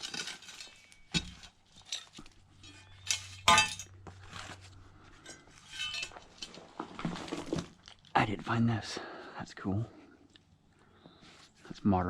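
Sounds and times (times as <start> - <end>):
glass clinking against hand digger: 0.0 - 3.9, 5.7 - 6.2.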